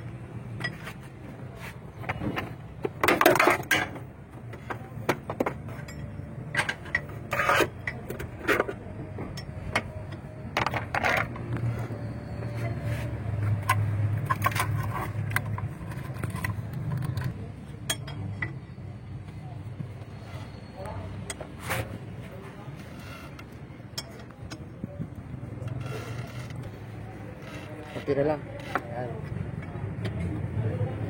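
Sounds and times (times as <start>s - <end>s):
metal tools clinking and scraping: 0.5s - 1.1s, 3.0s - 4.1s, 5.1s - 18.8s.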